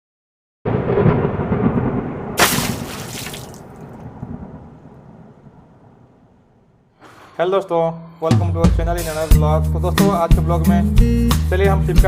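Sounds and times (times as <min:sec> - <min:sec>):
deep thunder-like rumble: 0:00.7 - 0:03.0, 0:03.6 - 0:06.7
sharp hissing crack: 0:02.4 - 0:03.6.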